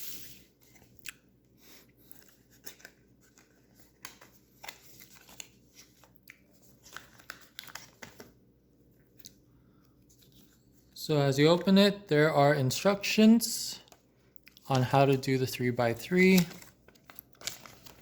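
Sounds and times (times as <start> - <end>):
packaging rustling and clicking: 2.1 - 8.4, 16.2 - 18.0.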